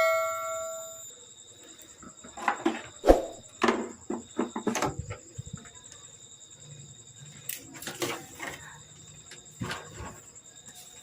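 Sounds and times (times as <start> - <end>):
bell-like chime: 0.0 - 1.1.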